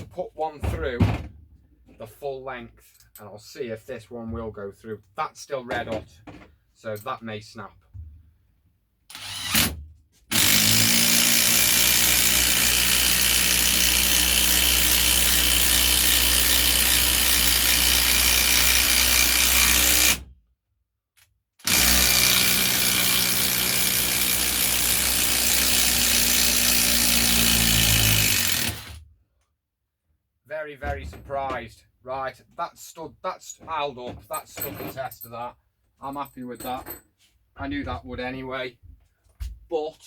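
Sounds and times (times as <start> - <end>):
impact driver hammering screw into wood: 9.1 - 20.3, 21.6 - 29.0.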